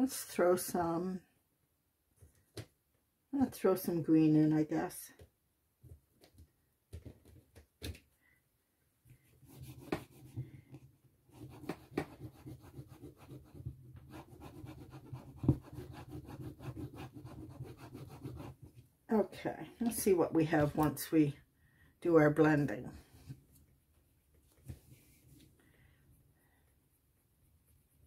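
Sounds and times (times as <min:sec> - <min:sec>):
pastel scribbling on paper: 0:09.4 - 0:10.4, 0:11.3 - 0:18.7.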